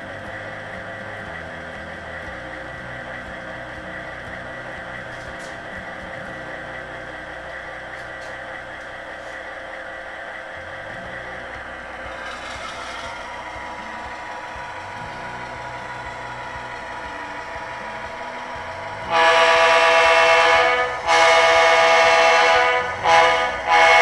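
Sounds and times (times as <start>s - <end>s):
diesel engine running: 0.0s - 24.0s
multi-note horn chord: 11.5s - 24.0s.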